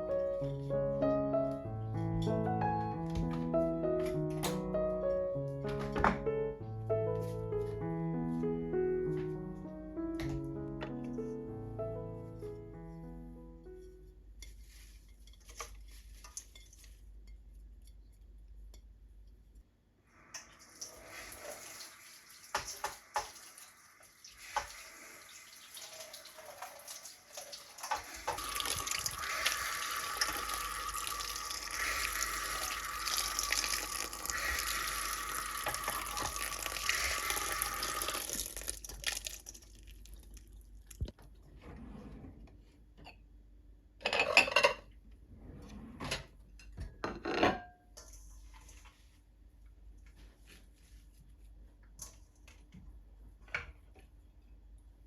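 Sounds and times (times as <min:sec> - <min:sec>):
knocks and splashes while rinsing: 0:20.8 - 0:41.2
tap running into a sink: 0:22.5 - 0:23.7, 0:24.4 - 0:25.0, 0:25.8 - 0:39.3.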